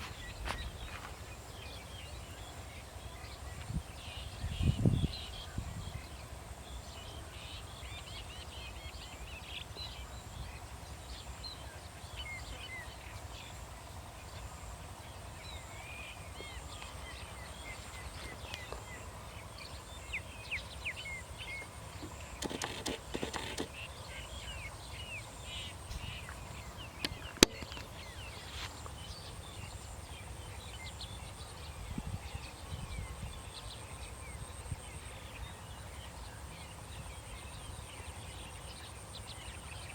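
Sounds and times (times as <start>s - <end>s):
bird chirps and calls: 15.5s - 33.7s
sharp click: 22.4s - 23.7s.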